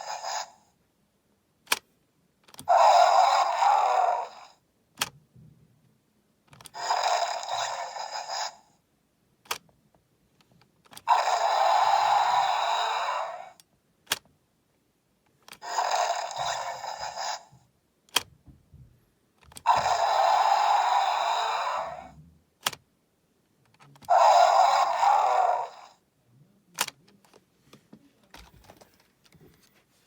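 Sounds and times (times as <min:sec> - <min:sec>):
toy dinosaur roar: 0:00.0 - 0:00.6, 0:02.6 - 0:04.6, 0:06.6 - 0:08.7, 0:10.9 - 0:13.6, 0:15.5 - 0:17.6, 0:19.5 - 0:22.2, 0:24.0 - 0:26.0.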